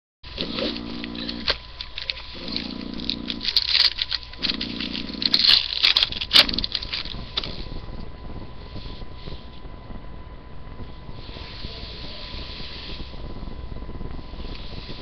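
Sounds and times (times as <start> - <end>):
low steady buzz: 0.2 - 15.0
plastic wrapping crinkling and tearing: 0.4 - 7.8.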